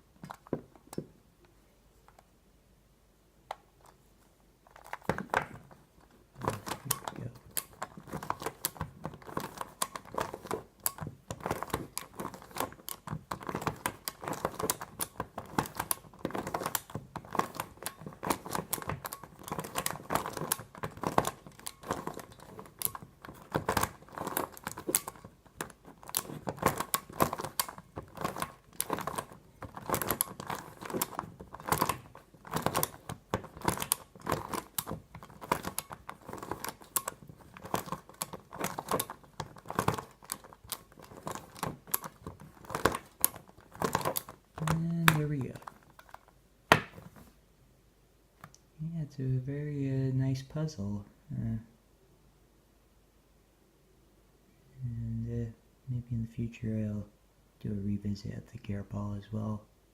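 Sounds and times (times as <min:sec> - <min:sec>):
plastic puzzle clicking: 0:04.6 - 0:47.3.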